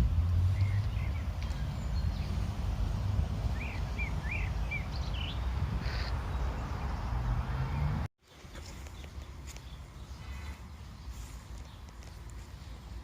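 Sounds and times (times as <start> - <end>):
songbird chirping: 0.1 - 13.0.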